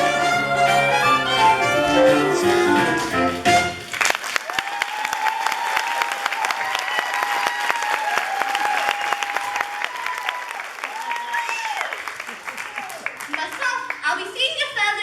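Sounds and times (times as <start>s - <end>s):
musical accompaniment: 0.0s - 3.9s
audience applause: 2.6s - 14.1s.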